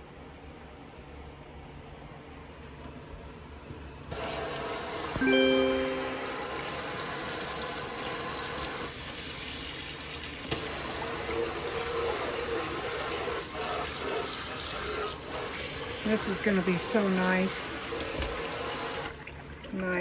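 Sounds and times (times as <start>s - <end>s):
water running from faucet: 4.1s - 20.0s
short ringing tone: 5.2s - 7.0s.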